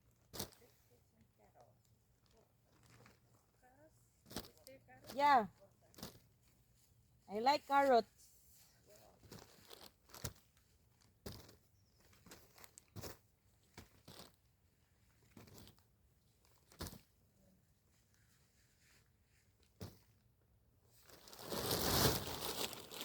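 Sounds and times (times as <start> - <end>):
rustling and crackling of leaves: 0.2 - 7.9, 8.5 - 17.2, 20.9 - 23.0.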